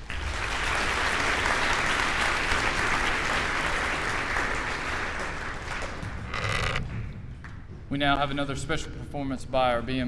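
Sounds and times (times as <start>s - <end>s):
audience applauding: 0.0s - 7.6s.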